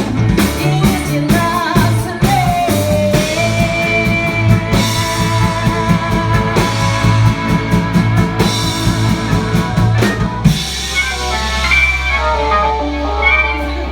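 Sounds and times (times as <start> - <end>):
bass guitar: 0.0 - 13.9
drum kit beat: 0.0 - 13.9
electric guitar: 0.0 - 13.9.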